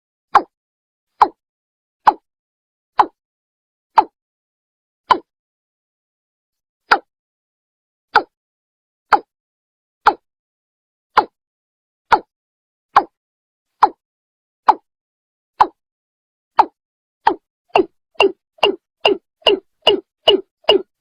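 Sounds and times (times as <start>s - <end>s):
bird calling short clipped notes: 16.6s - 20.8s.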